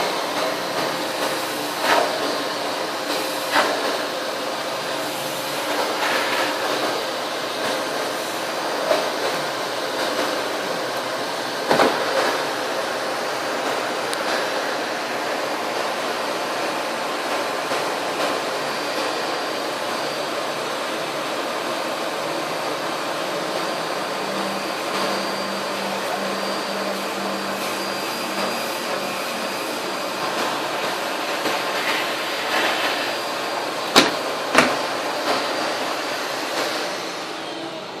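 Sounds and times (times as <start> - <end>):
vacuum cleaner running: 0.0 - 38.0
sharp knocks: 34.0 - 34.8.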